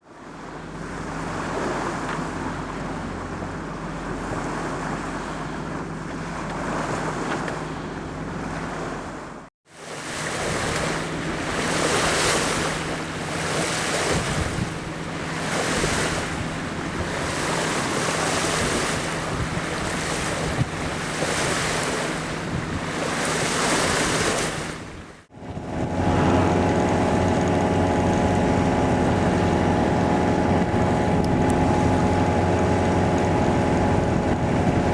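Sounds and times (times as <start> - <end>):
boat engine running: 0.0 - 34.9
water rushing past boat hull: 0.0 - 34.9
wind on microphone: 10.1 - 34.9.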